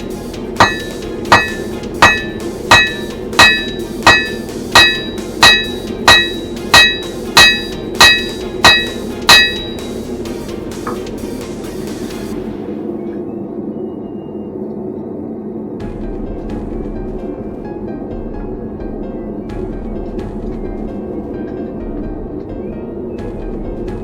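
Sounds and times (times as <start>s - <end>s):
hammer striking steel on anvil: 0.0s - 11.2s.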